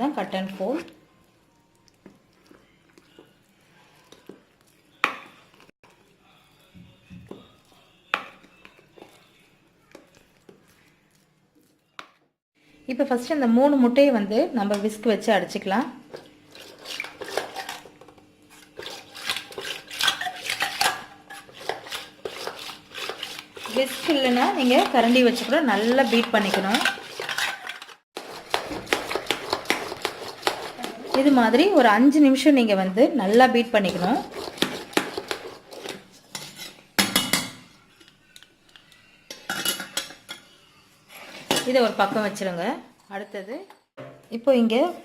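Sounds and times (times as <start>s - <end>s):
whisk beating eggs in bowl: 16.2s - 17.9s, 18.5s - 31.8s, 33.8s - 36.8s.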